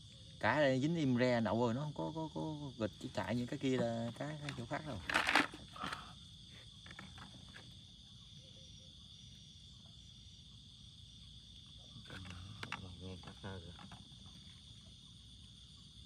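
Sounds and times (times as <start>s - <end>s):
crickets and insects trilling: 0.0s - 16.0s.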